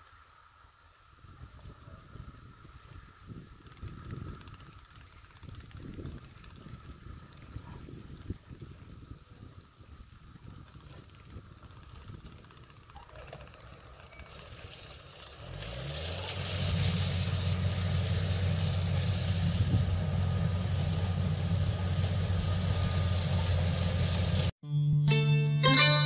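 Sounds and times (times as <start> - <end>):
farm machine engine running: 10.6 - 24.5.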